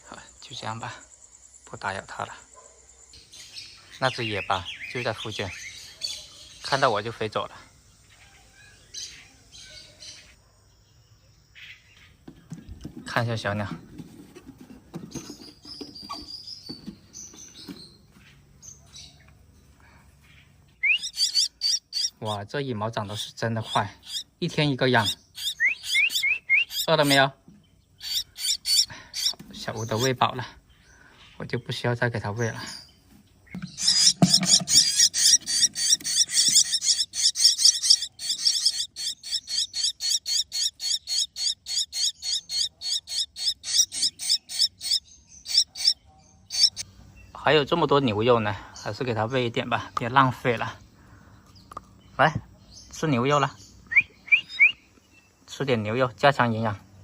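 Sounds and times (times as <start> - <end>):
bird nestlings peeping: 0.0 - 10.4, 20.3 - 56.7
soft knocks and rustles: 12.2 - 18.4.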